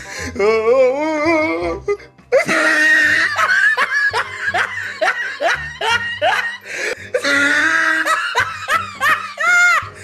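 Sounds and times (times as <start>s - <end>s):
person laughing: 2.4s - 10.0s.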